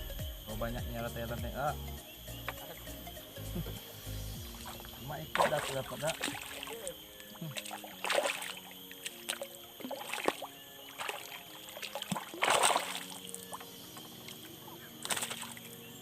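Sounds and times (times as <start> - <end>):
high-pitched hum: 0.0 - 7.7
water splashing: 2.5 - 16.0.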